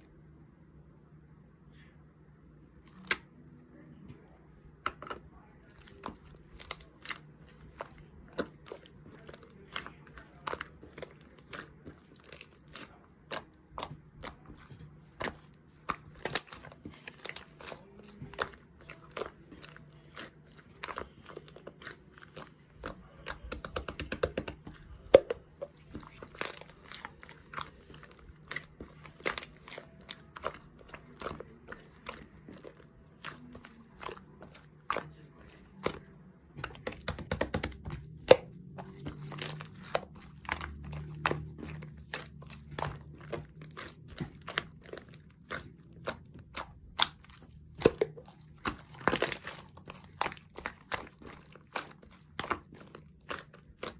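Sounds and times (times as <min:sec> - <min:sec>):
sharp clicks and taps: 0:36.6 - 0:38.4.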